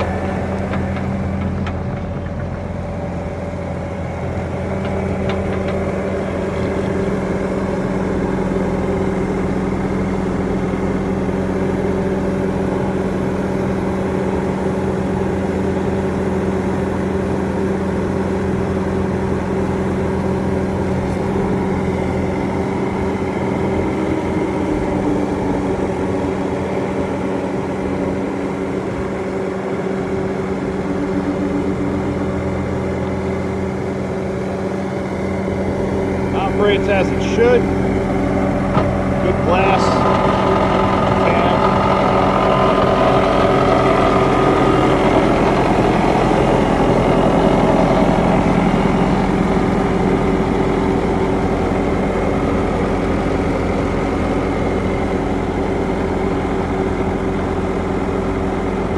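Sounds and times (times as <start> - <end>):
diesel engine running steadily: 0.0 - 58.9.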